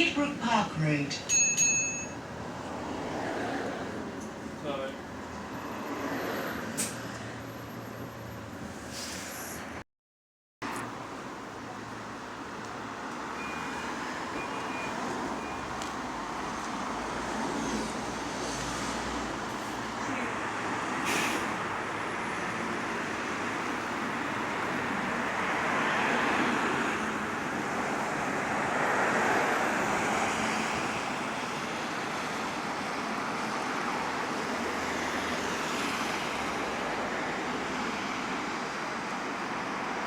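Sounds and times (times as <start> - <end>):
bus engine and road noise: 0.0 - 9.8, 10.6 - 40.0.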